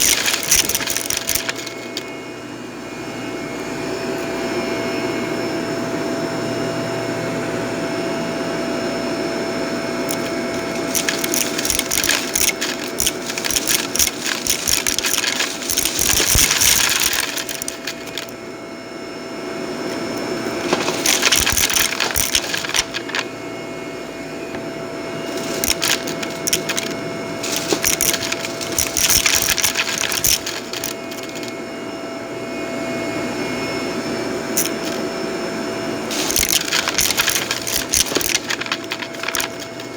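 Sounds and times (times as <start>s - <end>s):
debris crackling in vacuum: 0.0s - 2.1s, 10.1s - 18.3s, 19.9s - 23.3s, 25.3s - 31.5s, 36.1s - 39.9s
vacuum cleaner running: 0.0s - 39.9s.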